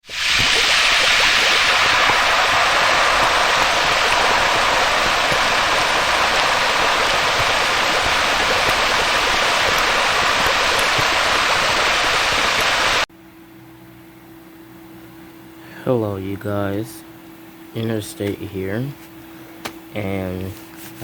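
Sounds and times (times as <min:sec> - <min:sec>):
rushing hiss: 0:00.0 - 0:13.1
faint hum: 0:00.1 - 0:21.0.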